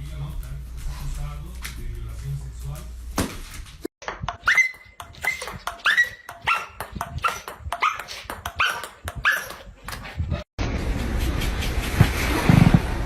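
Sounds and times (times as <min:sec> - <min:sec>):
dog barking high-pitched: 0:04.4 - 0:09.6.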